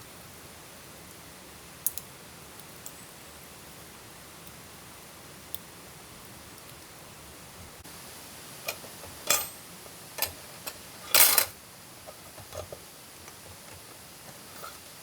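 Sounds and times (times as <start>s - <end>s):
camp cookware clinking: 8.5s - 15.0s.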